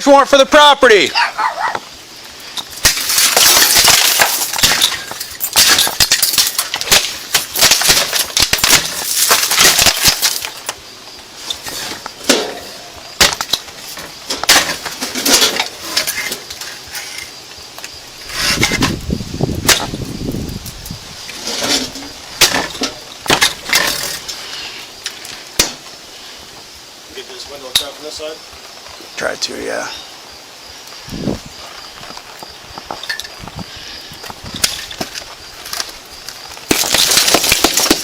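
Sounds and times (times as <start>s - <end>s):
glass and wood knocking and cracking: 2.6s - 10.8s, 11.6s - 16.7s, 21.5s - 24.3s, 25.6s - 25.9s, 36.5s - 38.0s.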